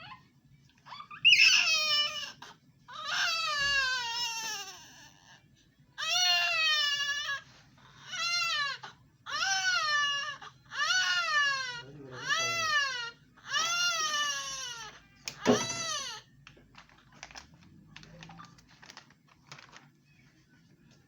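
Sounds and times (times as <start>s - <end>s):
newborn baby crying: 0.9s - 5.4s, 6.0s - 16.3s.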